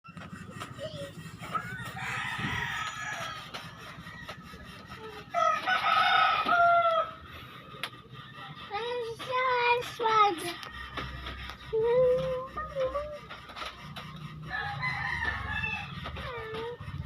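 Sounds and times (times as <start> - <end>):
rooster crowing: 1.5 - 4.7, 5.3 - 7.2, 14.5 - 16.4.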